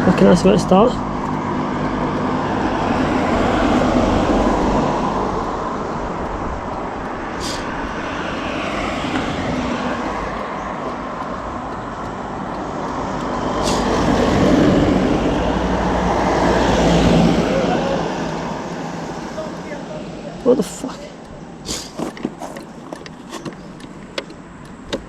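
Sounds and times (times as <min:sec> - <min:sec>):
brief high hisses: 0:07.4 - 0:07.7, 0:13.6 - 0:14.0, 0:21.6 - 0:22.0.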